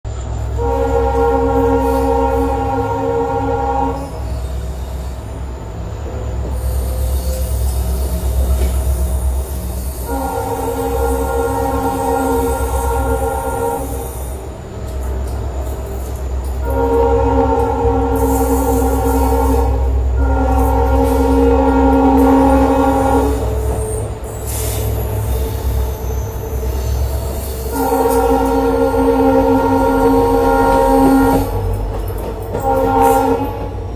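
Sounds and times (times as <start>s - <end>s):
train running noise: 0.0s - 33.9s
locomotive horn: 0.5s - 4.2s, 10.0s - 14.2s, 16.4s - 24.2s, 27.7s - 31.7s, 32.5s - 33.9s.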